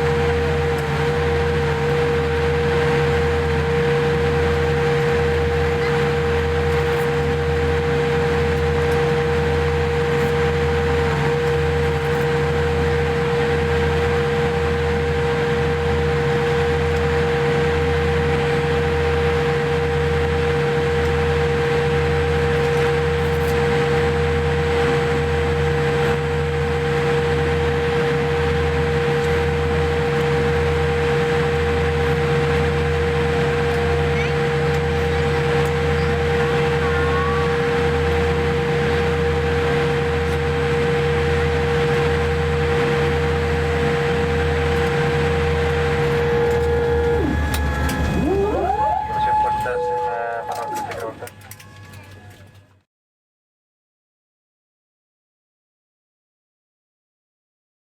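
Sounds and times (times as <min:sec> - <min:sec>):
pulsing low hum: 0:00.0 - 0:51.4
aircraft cabin whine: 0:00.0 - 0:52.8.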